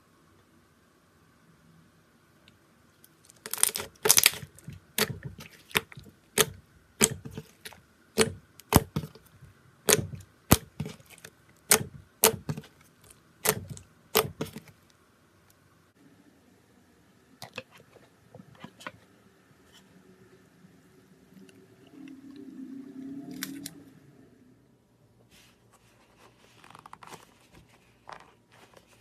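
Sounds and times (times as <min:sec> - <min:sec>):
knife cutting slime ball: 0:03.5 - 0:09.3, 0:09.9 - 0:14.7.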